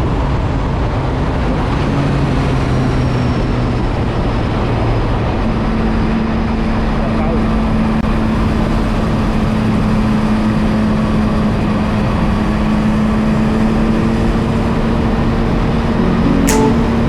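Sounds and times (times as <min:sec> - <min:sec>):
short sharp click: 0:16.3 - 0:17.0.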